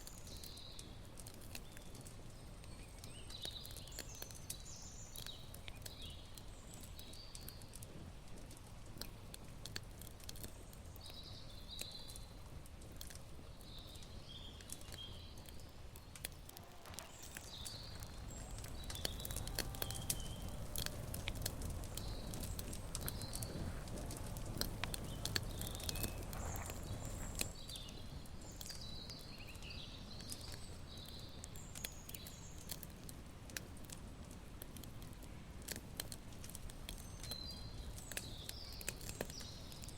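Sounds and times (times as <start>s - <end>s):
small birds chirping: 0.0s - 39.9s
light clicks and taps: 0.1s - 28.0s
low rustling handling noise: 16.1s - 27.8s.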